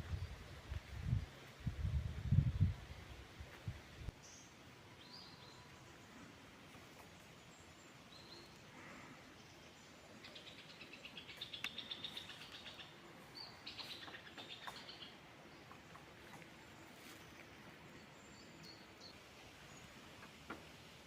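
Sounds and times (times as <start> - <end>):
woodpecker calling: 10.2 - 16.6.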